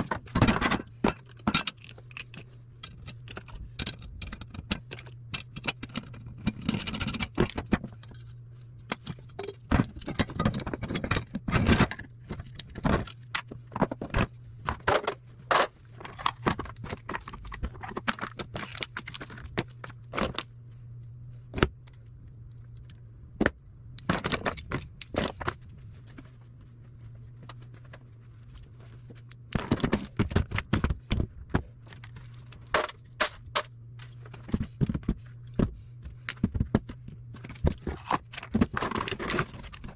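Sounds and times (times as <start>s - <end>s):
steady low hum: 0.0s - 39.9s
metal parts clinking and scraping: 0.1s - 20.4s, 37.4s - 39.9s.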